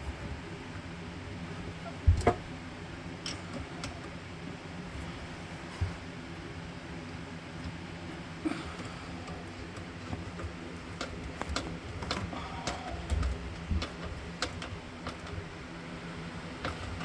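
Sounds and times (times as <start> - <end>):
steady low hum: 0.0 - 17.0
hand tools clicking and tapping: 9.2 - 15.4.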